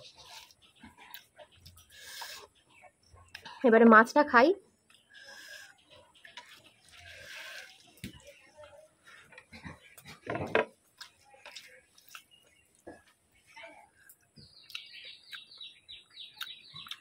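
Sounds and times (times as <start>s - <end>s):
chewing and wet mouth sounds: 0.1s - 3.5s, 10.8s - 13.2s, 14.0s - 17.0s.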